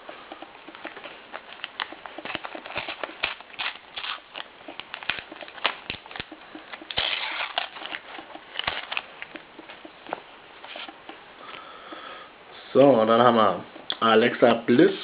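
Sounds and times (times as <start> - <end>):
paper sticker packets rustling: 0.7 - 11.2.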